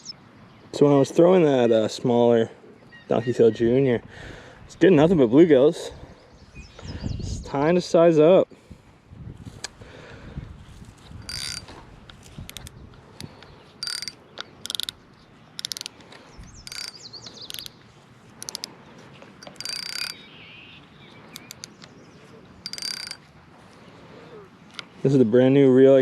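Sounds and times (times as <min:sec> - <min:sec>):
small birds chirping: 0:04.4 - 0:07.6, 0:11.2 - 0:26.0
fishing reel whirring and clicking: 0:11.2 - 0:11.8, 0:12.4 - 0:15.0, 0:15.6 - 0:16.0, 0:16.6 - 0:17.8, 0:18.4 - 0:18.7, 0:19.4 - 0:20.2, 0:21.3 - 0:21.9, 0:22.6 - 0:23.3.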